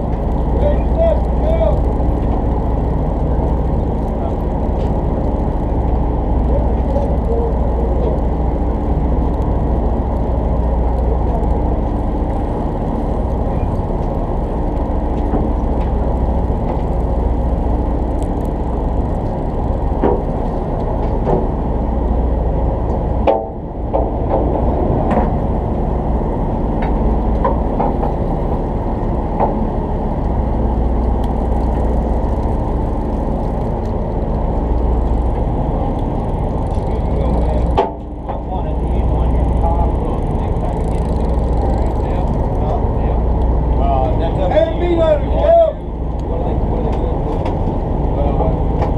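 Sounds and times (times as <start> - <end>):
boat engine rumbling: 0.0 - 48.9.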